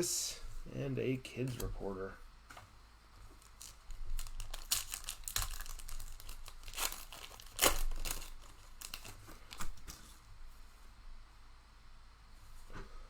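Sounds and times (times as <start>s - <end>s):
plastic wrapper tearing and crinkling: 3.3s - 10.1s.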